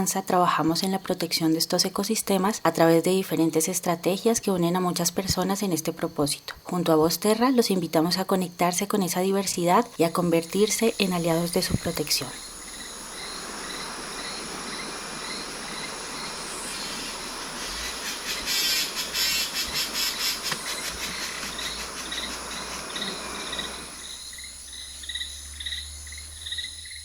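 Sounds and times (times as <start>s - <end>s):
background hiss: 0.0s - 27.0s
insect chirp: 0.0s - 27.0s
steady high whine: 9.7s - 27.0s
fast-pulsing insect buzz: 10.0s - 27.0s.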